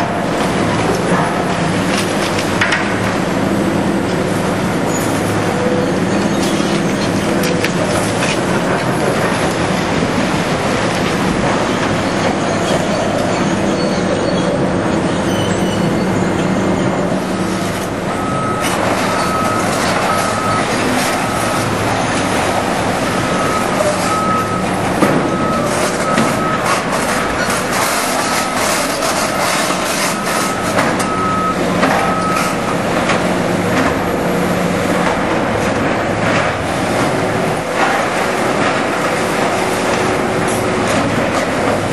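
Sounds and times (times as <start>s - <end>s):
diesel engines running: 0.0s - 41.9s
reversing alarm beeping: 15.3s - 33.2s.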